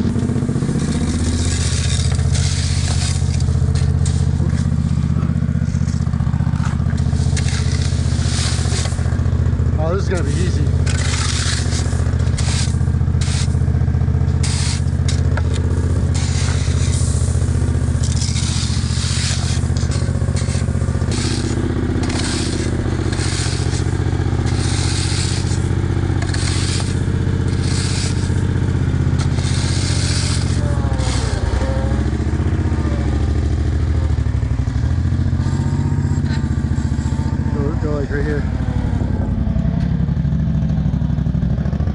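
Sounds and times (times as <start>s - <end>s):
small engine running: 0.0s - 41.9s
tools scraping crushed stone: 0.1s - 9.4s, 10.0s - 13.6s, 14.2s - 32.0s.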